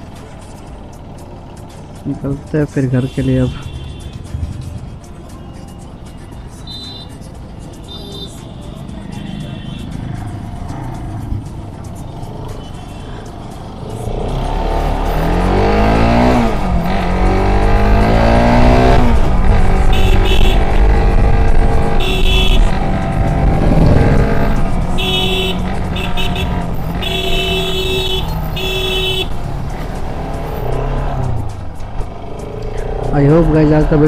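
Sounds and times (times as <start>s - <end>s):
motorcycle engine accelerating: 13.4s - 34.0s.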